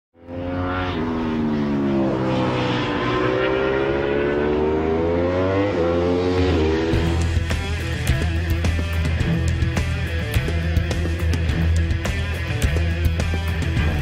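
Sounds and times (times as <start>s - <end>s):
motorcycle engine revving: 0.2s - 14.0s.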